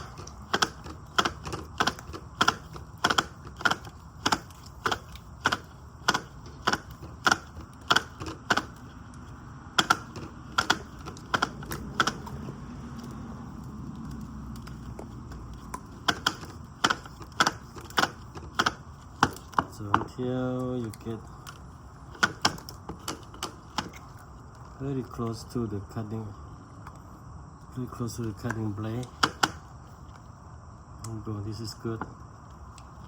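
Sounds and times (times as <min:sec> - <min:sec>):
trimmer line head clicking: 0:00.0 - 0:08.8.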